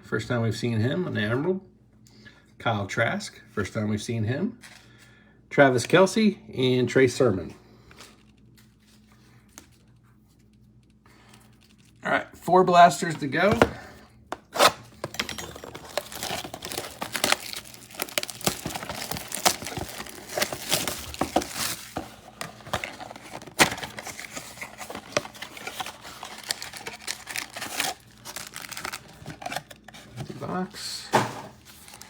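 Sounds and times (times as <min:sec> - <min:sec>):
plastic packaging crinkling and tearing: 0:14.5 - 0:32.0.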